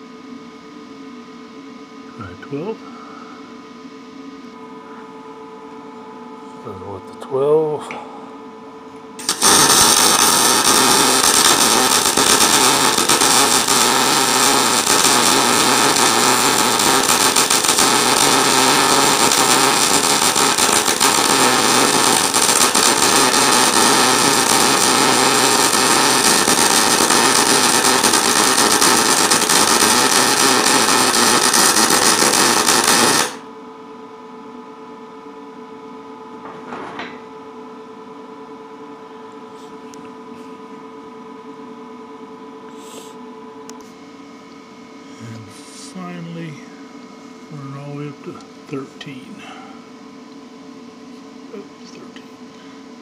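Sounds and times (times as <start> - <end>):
steady hum: 0.0 - 53.0
welder arc crackling: 9.2 - 33.5, 45.5 - 46.6.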